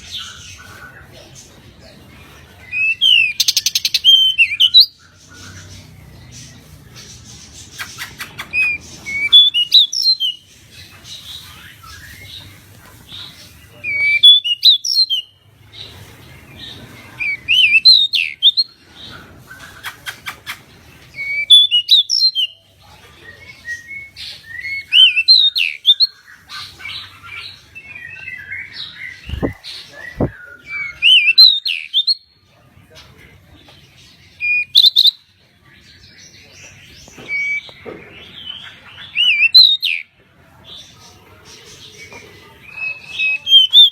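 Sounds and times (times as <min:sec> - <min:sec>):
bird singing whistled notes: 0:27.9 - 0:32.2.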